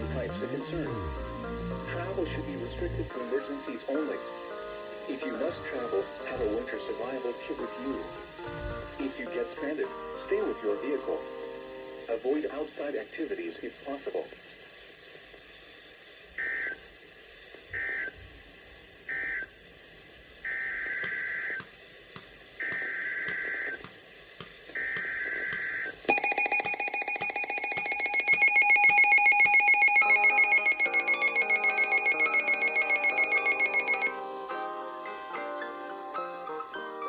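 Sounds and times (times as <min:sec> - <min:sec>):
screechy two-tone data bursts: 0:24.7 - 0:34.1.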